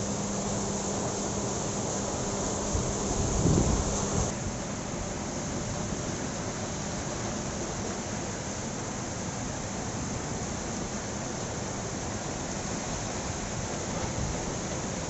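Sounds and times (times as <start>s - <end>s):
strong wind: 0.0s - 5.2s.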